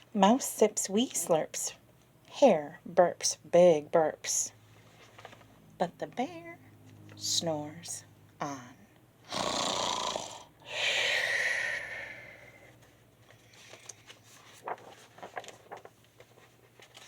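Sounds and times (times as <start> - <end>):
rustling: 4.8 - 5.6, 12.8 - 17.0
person imitating snoring: 9.3 - 12.4.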